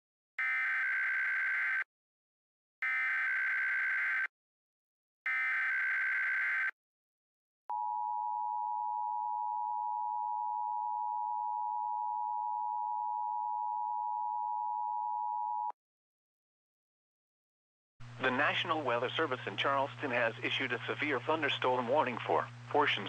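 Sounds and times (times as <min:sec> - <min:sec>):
steady warning alarm tone: 0:00.4 - 0:01.8, 0:02.8 - 0:04.3, 0:05.3 - 0:06.7
buzzing data squawk: 0:05.3 - 0:06.7.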